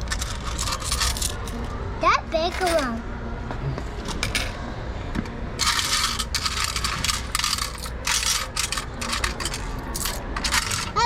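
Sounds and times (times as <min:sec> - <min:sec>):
coins jingling and clattering: 0:00.0 - 0:01.7, 0:05.6 - 0:11.0.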